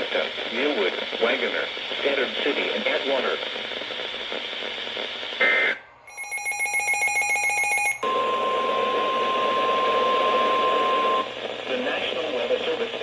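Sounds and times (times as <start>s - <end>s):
radio static: 0.0s - 6.0s, 8.1s - 13.0s
steady alarm tone: 6.0s - 11.3s.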